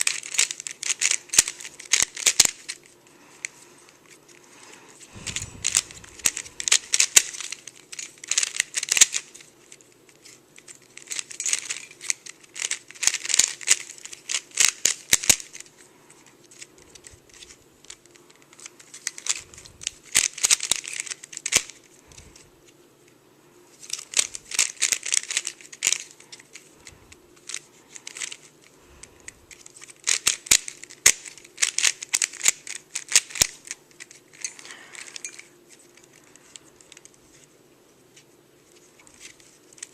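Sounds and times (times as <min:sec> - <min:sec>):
speed cube clicking: 0:00.0 - 0:02.9, 0:05.2 - 0:09.8, 0:10.6 - 0:15.7, 0:16.5 - 0:21.8, 0:24.0 - 0:28.8, 0:29.5 - 0:34.4.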